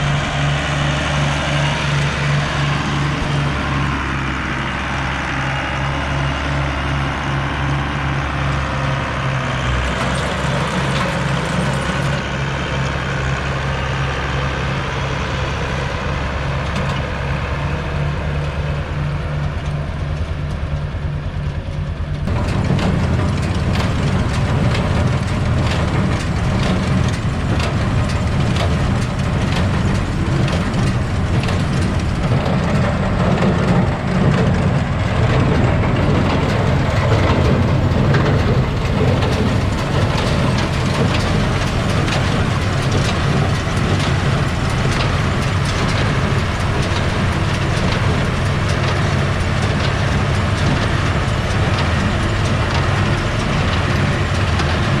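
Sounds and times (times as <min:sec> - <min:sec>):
tractor engine under load: 0:00.0 - 0:55.0
hay equipment clattering: 0:09.8 - 0:12.4, 0:22.3 - 0:55.0.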